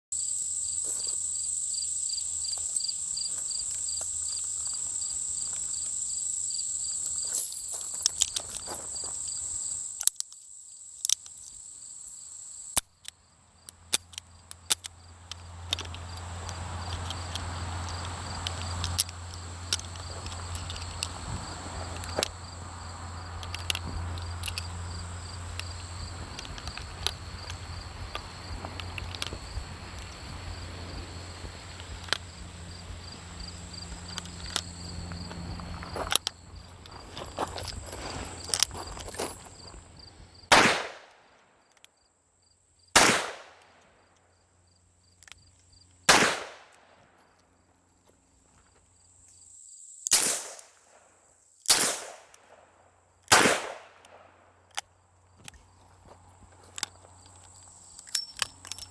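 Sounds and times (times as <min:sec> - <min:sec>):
insects chirring: 0:00.1 - 0:58.9
sharp clicks and knocks: 0:12.8 - 0:22.4, 0:23.4 - 0:24.7.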